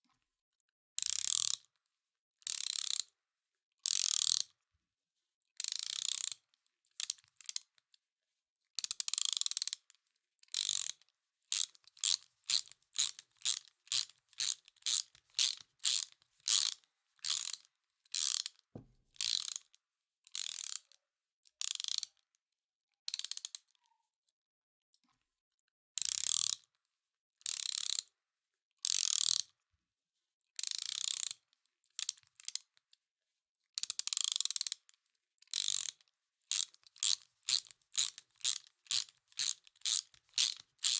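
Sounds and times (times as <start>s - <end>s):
ratchet wrench clicking: 1.0s - 1.6s, 2.5s - 3.0s, 3.9s - 4.5s, 5.7s - 6.4s, 8.9s - 9.8s, 10.6s - 17.6s, 18.2s - 18.5s, 19.2s - 19.6s, 20.4s - 20.8s, 21.7s - 22.0s, 26.0s - 26.6s, 27.5s - 28.0s, 28.9s - 29.4s, 30.6s - 31.4s, 34.0s - 34.8s, 35.5s - 40.9s.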